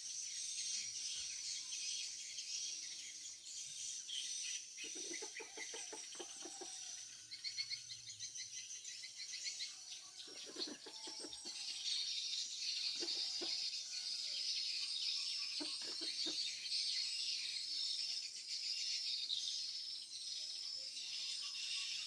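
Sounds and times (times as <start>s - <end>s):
high-pitched bird chattering twitter: 4.6s - 6.9s, 14.8s - 18.2s.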